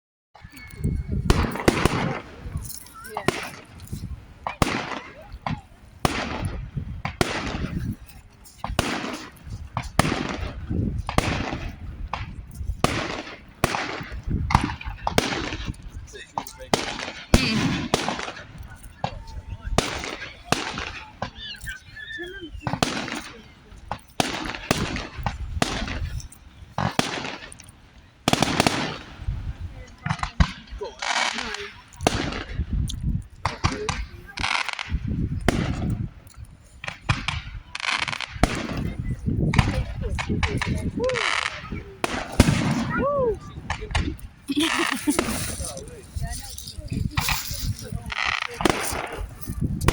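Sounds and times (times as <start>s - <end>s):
fireworks bangs with hiss: 0.4s - 49.9s.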